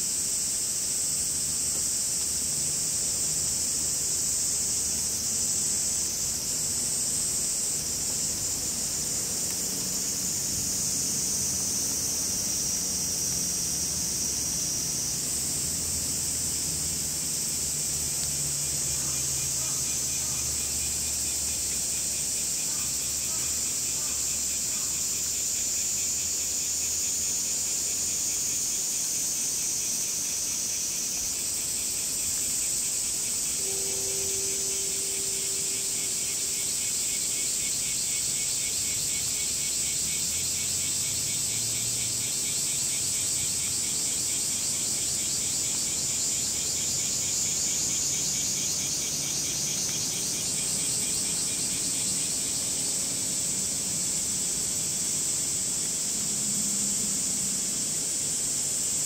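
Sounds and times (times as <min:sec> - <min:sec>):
cicadas chorus: 0:00.0 - 0:59.0
faint steady hiss: 0:00.0 - 0:59.0
brief low tone: 0:33.6 - 0:37.4.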